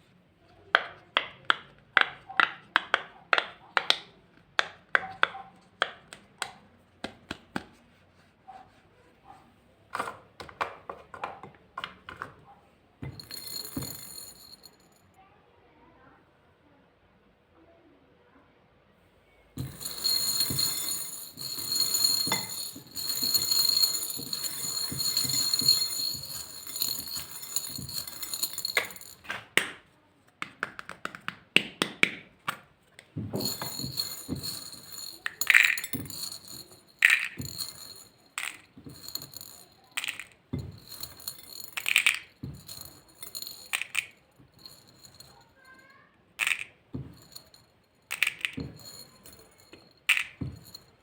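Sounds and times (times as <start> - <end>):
small hard pieces rattling: 13.1 - 14.8, 19.6 - 29.3, 33.4 - 45.6, 46.4 - 51.0
sharp clicks and clinks: 13.1 - 14.9, 19.6 - 29.5, 33.4 - 51.0.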